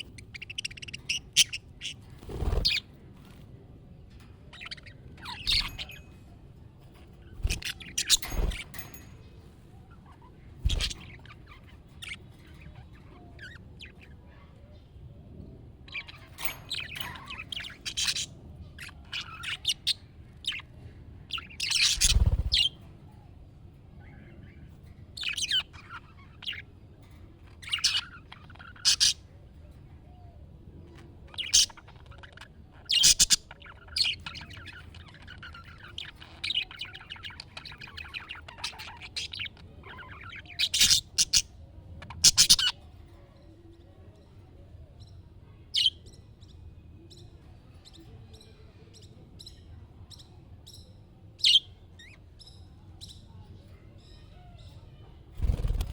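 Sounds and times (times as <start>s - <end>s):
budgerigars chirping and squawking: 0.0s - 2.9s, 4.1s - 6.1s, 7.3s - 9.1s, 9.9s - 14.5s, 15.9s - 20.7s, 21.3s - 22.9s, 25.2s - 29.4s, 31.3s - 42.8s, 54.6s - 55.9s
budgerigars warbling chatter: 4.6s - 6.0s, 10.6s - 12.7s, 16.0s - 20.6s, 21.6s - 22.8s, 27.7s - 29.2s, 31.4s - 42.8s.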